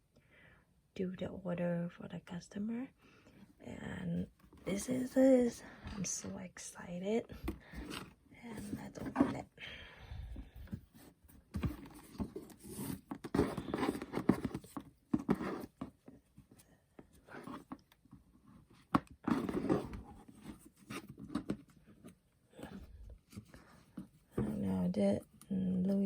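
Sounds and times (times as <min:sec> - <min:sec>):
cardboard and paper rustling: 0:07.4 - 0:09.4, 0:10.6 - 0:16.0, 0:18.7 - 0:24.9.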